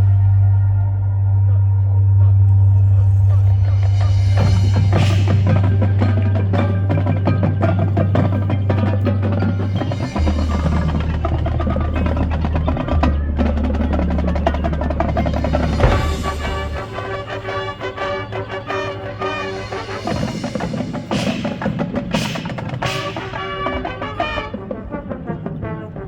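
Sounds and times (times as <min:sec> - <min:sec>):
low bass note: 0:00.0 - 0:18.1
mallet percussion: 0:00.0 - 0:24.6
drums: 0:02.9 - 0:26.0
marching band playing: 0:03.4 - 0:26.0.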